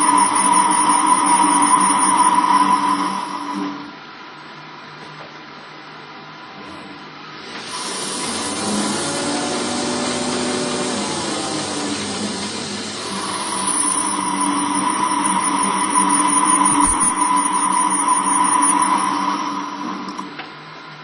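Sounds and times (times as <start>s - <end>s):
lathe motor hum: 0.0s - 3.8s, 7.6s - 20.4s
steady whine: 0.0s - 5.0s, 7.4s - 21.0s
lathe cutting hiss: 7.5s - 20.2s.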